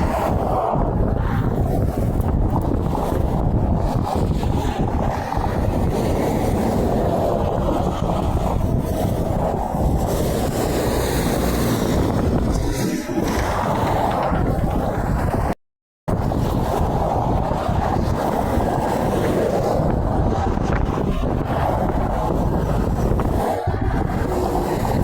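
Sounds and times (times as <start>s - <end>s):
trucks passing: 0.0s - 0.7s, 10.0s - 14.3s
highway traffic rumble: 0.0s - 25.0s
wind buffeting microphone: 0.0s - 25.0s.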